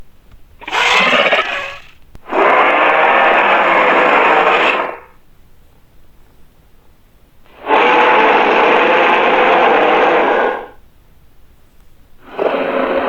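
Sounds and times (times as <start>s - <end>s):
dinosaur roars: 0.6s - 5.0s.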